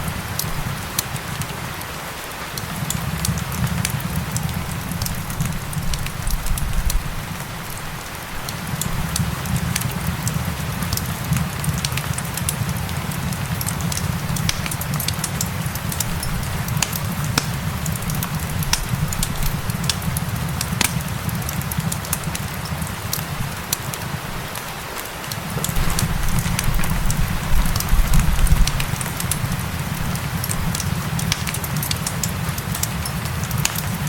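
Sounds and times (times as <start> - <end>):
fire crackling and popping: 0.0 - 34.0
rain hiss: 0.0 - 34.0
low rumble: 25.8 - 30.1.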